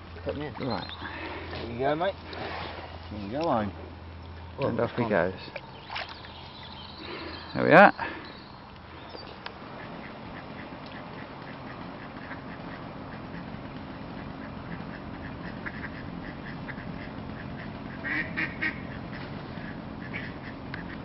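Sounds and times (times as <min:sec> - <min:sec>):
ducks quacking: 0:09.7 - 0:21.0.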